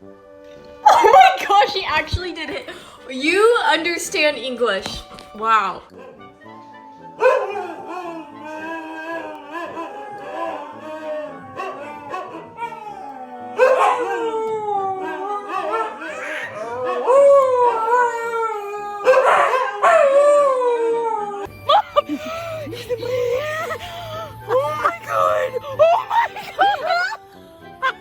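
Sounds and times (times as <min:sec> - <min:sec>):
dog howling: 0:05.9 - 0:28.0.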